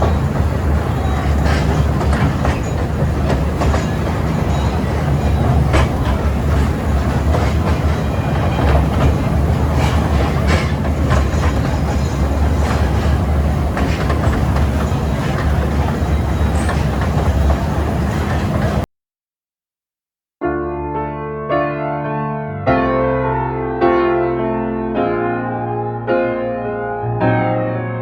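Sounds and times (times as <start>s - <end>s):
toy train rumbling: 0.0s - 18.8s
train wheels clacking on rails: 0.0s - 18.8s.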